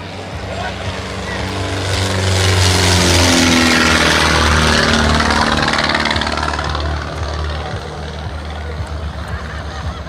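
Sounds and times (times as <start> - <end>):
helicopter passing overhead: 0.0 - 10.0.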